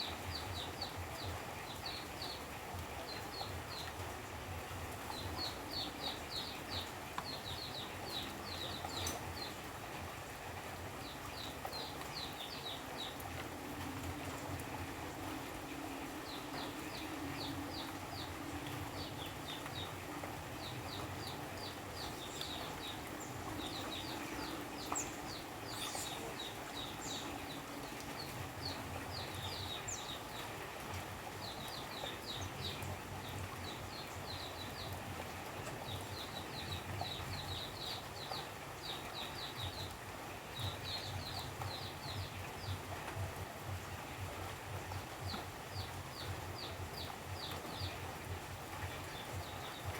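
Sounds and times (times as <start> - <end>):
rain falling steadily: 0.0 - 49.9
high chirping calls: 21.6 - 27.6.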